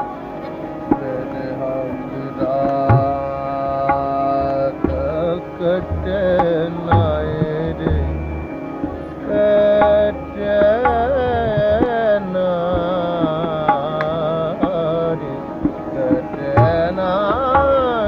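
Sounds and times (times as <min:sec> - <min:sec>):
tabla drumming: 0:00.9 - 0:18.0
wavering melodic line: 0:01.2 - 0:12.9.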